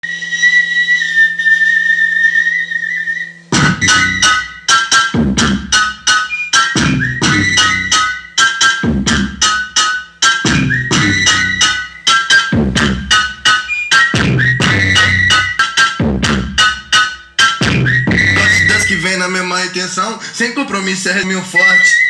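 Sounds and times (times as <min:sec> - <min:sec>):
high whistle-like tone: 0:00.0 - 0:05.1, 0:05.7 - 0:08.7, 0:09.9 - 0:15.8, 0:17.7 - 0:19.0, 0:21.3 - 0:22.0
low hum: 0:00.0 - 0:06.1, 0:14.2 - 0:16.7
electronic dance music: 0:03.5 - 0:22.0.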